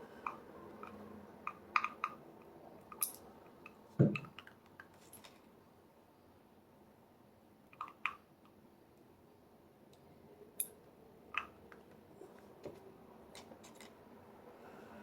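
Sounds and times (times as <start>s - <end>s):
lock pins and tools clicking: 2.8s - 5.4s.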